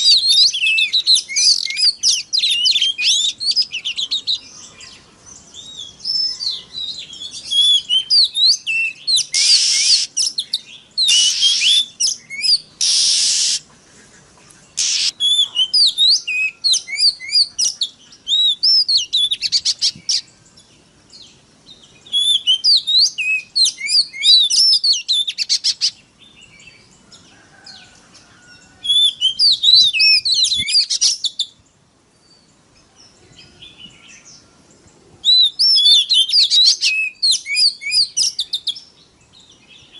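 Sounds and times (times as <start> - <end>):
bird singing whistled phrases: 0.0 - 4.3, 5.6 - 13.6, 14.8 - 20.3, 22.0 - 26.0, 28.8 - 31.5, 35.2 - 38.9
harsh rasping bird notes: 12.8 - 14.1, 14.7 - 16.5.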